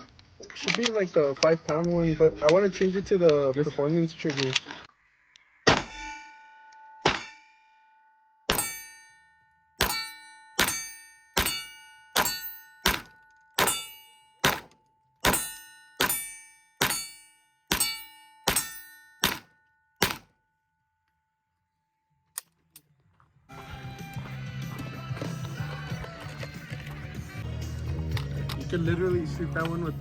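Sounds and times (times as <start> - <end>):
steel target ringing: 5.7 - 20.4
gunshots: 14.4 - 16.2, 18.5 - 20.3.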